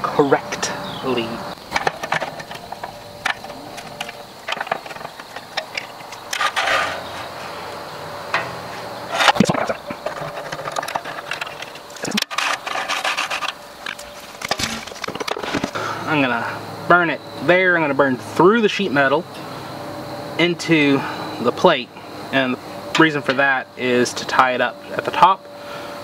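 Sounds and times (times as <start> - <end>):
metal parts clicking and knocking: 1.7 - 7.0, 9.2 - 15.7
metal scrape: 1.7 - 7.6, 8.3 - 15.7.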